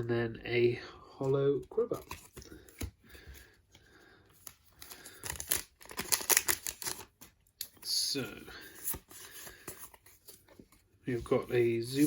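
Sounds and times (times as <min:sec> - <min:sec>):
foil pack crinkling: 0:04.8 - 0:07.2.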